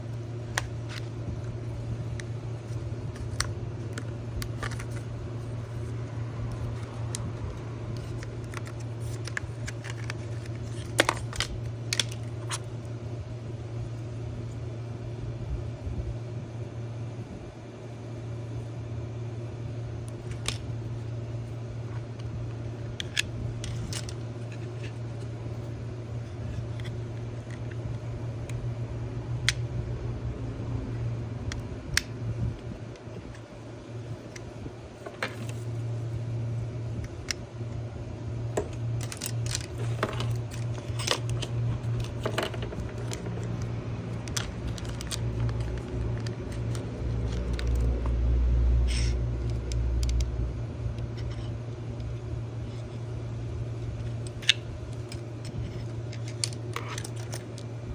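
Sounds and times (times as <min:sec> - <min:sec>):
steady low hum: 0:00.0 - 0:57.9
clicks of small hardware handled: 0:38.6 - 0:48.1, 0:54.2 - 0:57.7.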